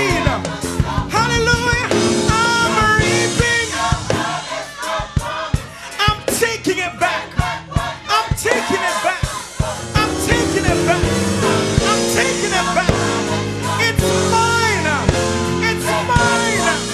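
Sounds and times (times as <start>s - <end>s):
band with drums and bass: 0.0s - 16.9s
person singing with vibrato: 8.5s - 15.0s.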